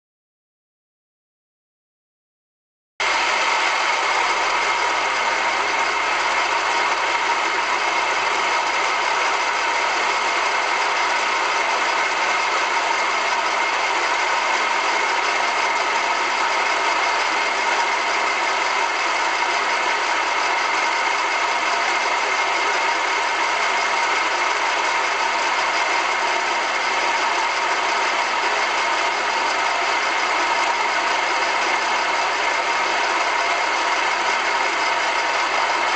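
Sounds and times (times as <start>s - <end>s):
car engine idling: 3.0s - 35.9s.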